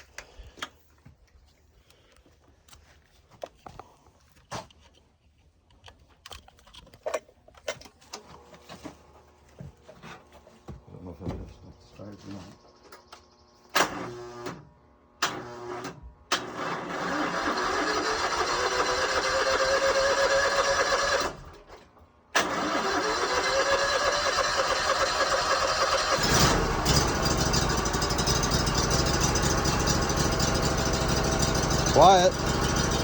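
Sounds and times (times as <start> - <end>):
electric starter cranking engine: 15.2 - 21.7, 22.4 - 33.0
engine running: 23.9 - 33.0.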